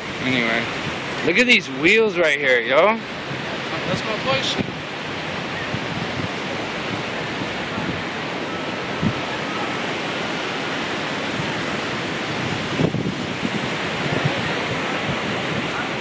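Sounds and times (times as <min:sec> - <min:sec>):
low thumps from gusts: 0:03.0 - 0:08.3, 0:08.9 - 0:09.4, 0:11.1 - 0:16.0
wind buffeting microphone: 0:03.0 - 0:16.0.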